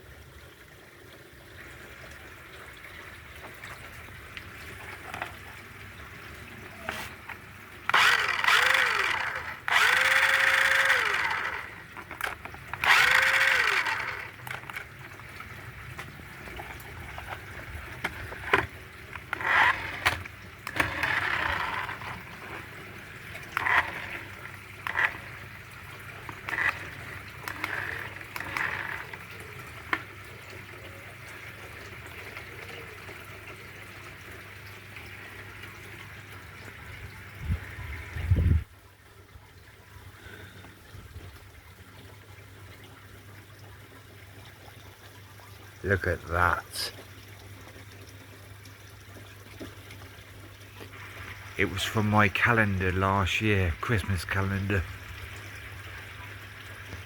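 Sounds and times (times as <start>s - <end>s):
toy car motor whirring: 6.8s - 15.2s, 16.6s - 30.1s.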